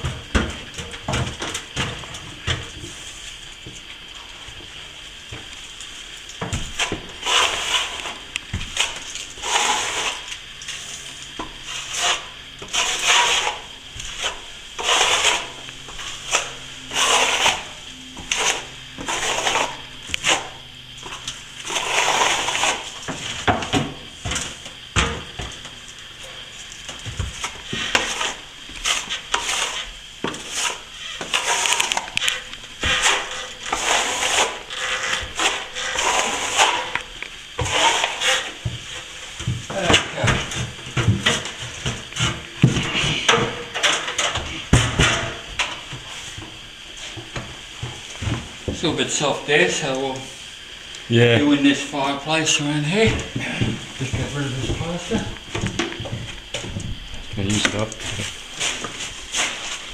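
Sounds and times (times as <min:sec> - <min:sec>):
trowel scraping plaster: 0:06.7 - 0:20.6, 0:21.6 - 0:23.4, 0:27.4 - 0:46.4.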